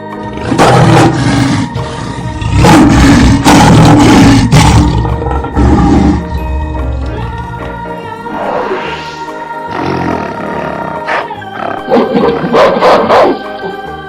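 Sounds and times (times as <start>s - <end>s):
background music: 0.0s - 14.0s
animal roaring: 0.3s - 6.5s, 8.3s - 12.4s.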